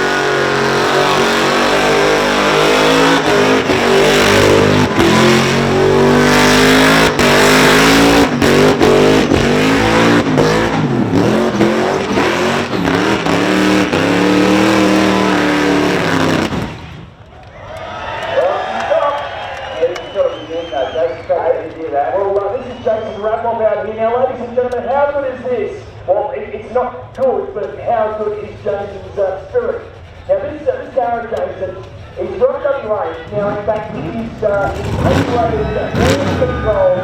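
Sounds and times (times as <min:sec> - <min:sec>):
car engine revving: 0:00.0 - 0:17.2, 0:33.2 - 0:37.0.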